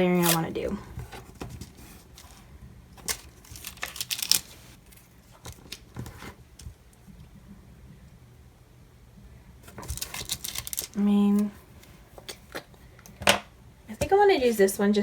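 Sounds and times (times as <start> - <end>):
paper and tape rustling: 0.0 - 6.4, 9.7 - 11.9.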